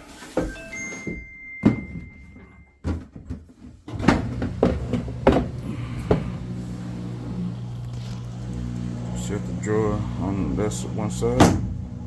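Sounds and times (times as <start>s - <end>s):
drawer knocks and clunks: 0.4s - 2.2s, 2.8s - 6.4s.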